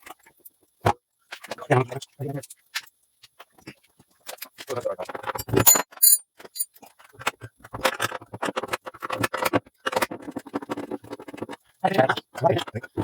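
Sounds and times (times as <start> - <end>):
small metal parts clinking: 5.4 - 6.7
metallic ring: 5.5 - 6.7.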